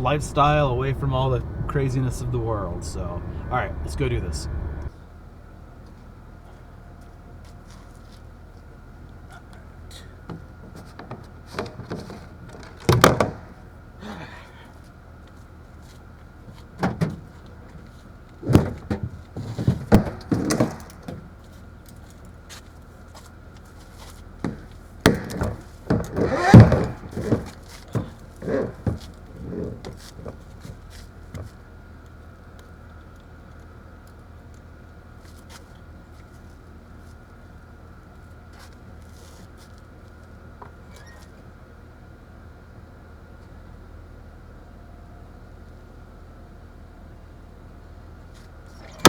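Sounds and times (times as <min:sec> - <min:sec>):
faint steady hum: 0:00.0 - 0:04.9.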